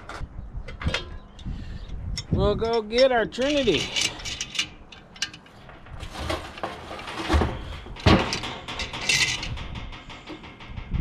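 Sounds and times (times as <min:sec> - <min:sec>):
handling clicks and knocks: 0:02.2 - 0:10.8.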